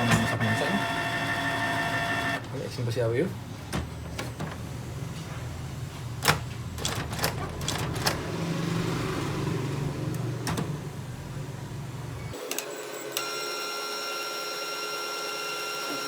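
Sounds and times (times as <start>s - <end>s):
printer mechanism clicks: 0.0s - 0.7s, 6.2s - 8.2s
printer motors whirring: 0.0s - 16.0s.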